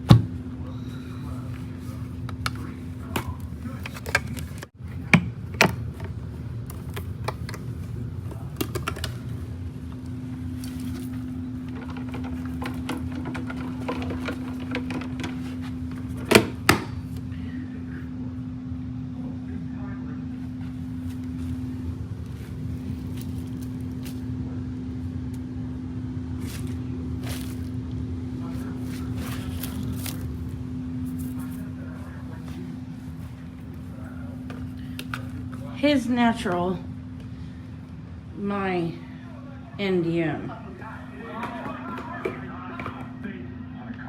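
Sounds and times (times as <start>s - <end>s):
vacuum cleaner humming: 0.0s - 18.4s
vacuum cleaner running: 0.0s - 44.0s.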